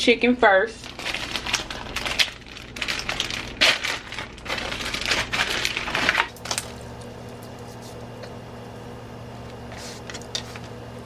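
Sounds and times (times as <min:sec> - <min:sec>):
steady low hum: 0:00.0 - 0:11.0
food wrapping crinkling: 0:00.8 - 0:06.8.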